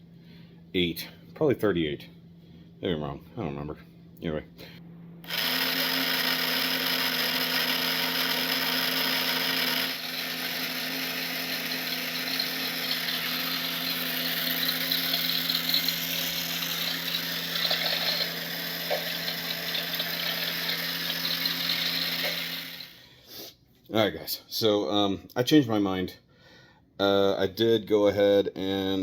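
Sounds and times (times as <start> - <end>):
small electric motor whirring: 5.2 - 23.1.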